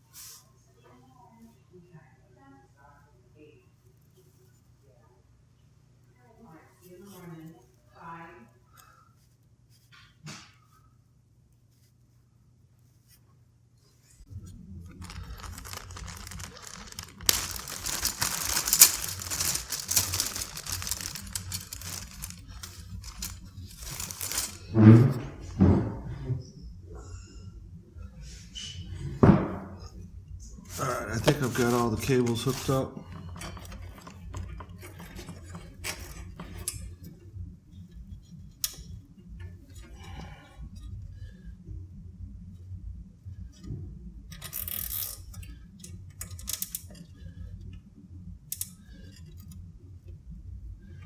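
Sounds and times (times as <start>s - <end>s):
steady low hum: 0.0s - 51.0s
cables rustling and crinkling: 13.9s - 25.6s, 29.8s - 51.0s.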